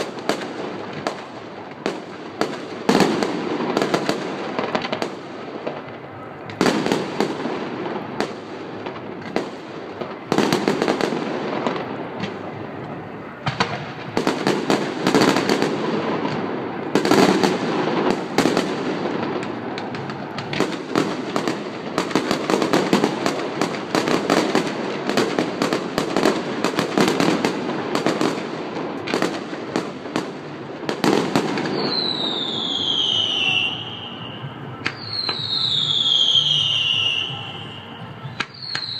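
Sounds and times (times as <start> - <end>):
fireworks bangs and crackling: 0.0 - 38.9
falling firework whistle: 31.6 - 38.9.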